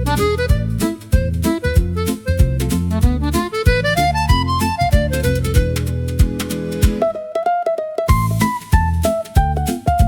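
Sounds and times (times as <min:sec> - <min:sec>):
upbeat fiddle-like music: 0:00.0 - 0:10.0.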